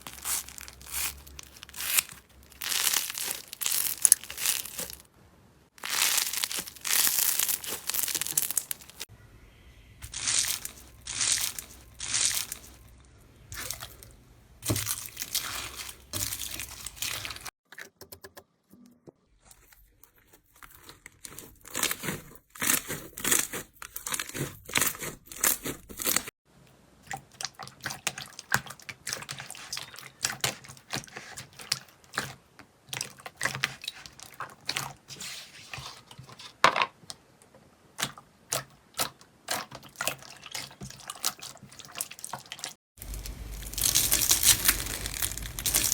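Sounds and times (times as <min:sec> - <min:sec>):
slime squished by hands: 0:00.0 - 0:05.0, 0:05.8 - 0:09.1, 0:10.0 - 0:12.9, 0:13.5 - 0:17.5, 0:43.0 - 0:45.9.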